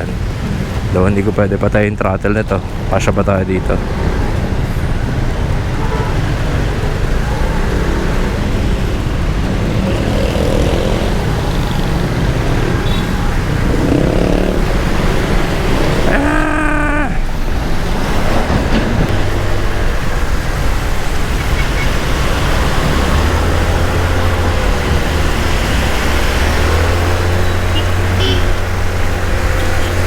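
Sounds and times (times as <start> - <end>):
scooter engine running: 8.5 - 16.1.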